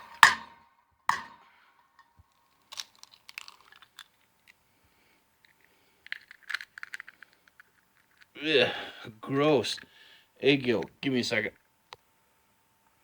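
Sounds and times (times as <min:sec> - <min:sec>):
eggshell cracking and crunching: 0:02.3 - 0:04.6, 0:05.4 - 0:08.4.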